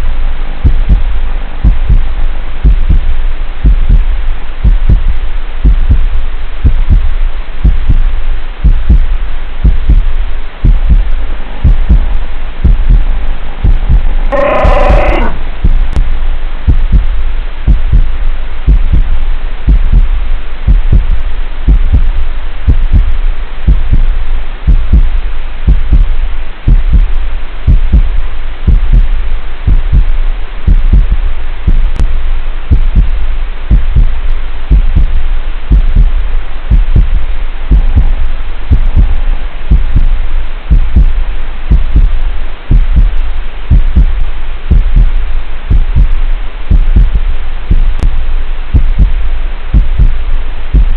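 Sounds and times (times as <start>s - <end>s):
steady hiss: 0.0s - 50.9s
loud low thumps: 10.6s - 16.1s, 35.7s - 40.1s, 40.7s - 45.1s, 45.7s - 50.2s.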